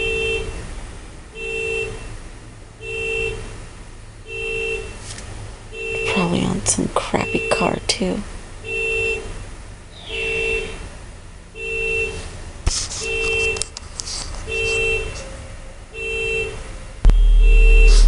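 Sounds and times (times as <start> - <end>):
car alarm horn honks: 0.0 - 0.7, 1.3 - 2.2, 2.8 - 3.5, 4.2 - 5.0, 5.7 - 7.8, 8.6 - 9.4, 10.0 - 10.9, 11.5 - 12.3, 13.0 - 13.6, 14.5 - 15.3, 15.9 - 18.0
loud low rumble: 17.0 - 18.0.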